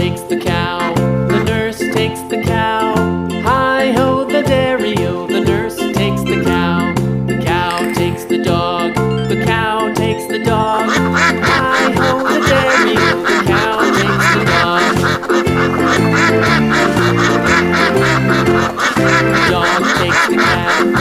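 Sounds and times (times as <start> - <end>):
person singing: 0.0 - 16.8, 18.8 - 21.0
bouncy children's song music: 0.0 - 21.0
cartoon duck quacks: 10.7 - 21.0.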